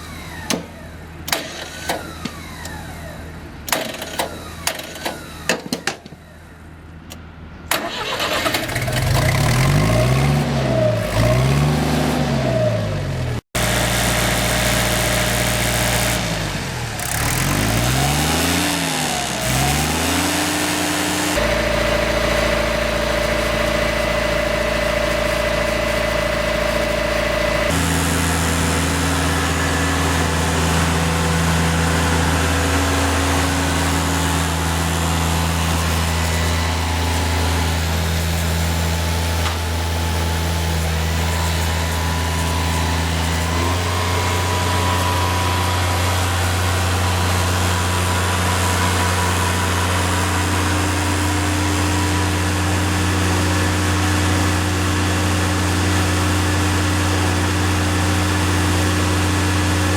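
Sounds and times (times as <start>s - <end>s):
sharp clicks and knocks: 3.7s - 6.2s
tractor diesel engine revving: 7.1s - 59.9s.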